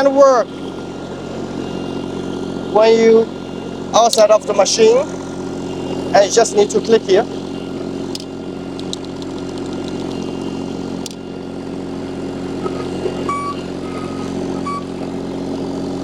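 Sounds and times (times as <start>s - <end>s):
diesel engine idling: 0.0s - 16.0s
sharp clicks: 8.1s - 11.2s.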